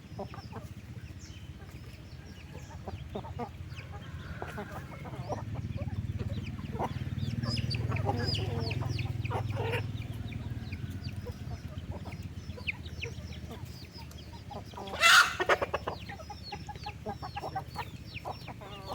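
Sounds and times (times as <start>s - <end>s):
chickens clucking: 0.0s - 18.9s.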